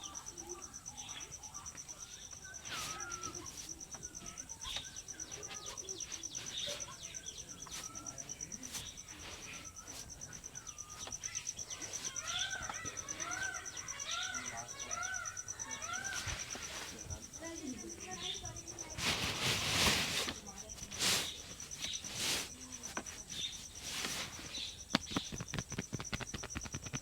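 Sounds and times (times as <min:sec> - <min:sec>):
birds chirping: 0:00.0 - 0:27.0
high pulsing insect trill: 0:00.0 - 0:27.0
sharp taps: 0:24.9 - 0:27.0.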